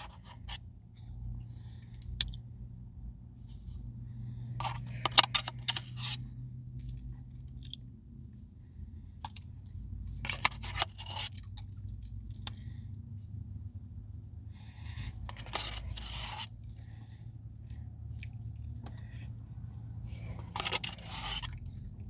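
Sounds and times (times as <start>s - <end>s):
steady low hum: 0.0s - 22.0s
spoon scraping and clicking: 4.6s - 6.2s, 10.3s - 11.4s, 15.0s - 16.5s, 20.2s - 21.6s.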